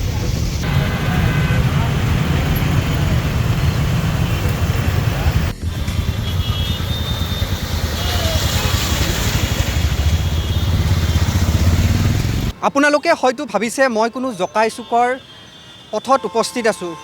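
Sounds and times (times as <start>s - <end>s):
vehicle engines running: 0.0s - 12.6s.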